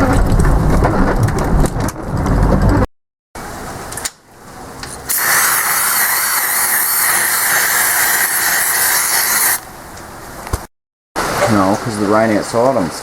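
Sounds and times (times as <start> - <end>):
heavy rain hissing: 5.1 - 9.6.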